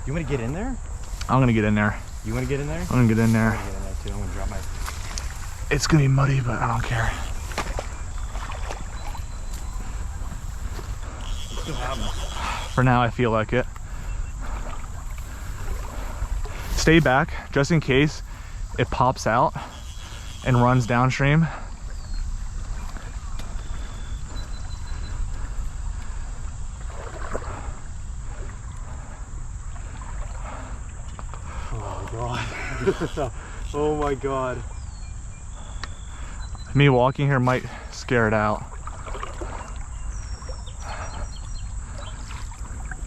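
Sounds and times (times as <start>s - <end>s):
steady low rumble: 0.0s - 19.6s
footsteps sloshing in muddy water: 2.0s - 18.9s, 21.6s - 32.9s, 38.6s - 43.0s.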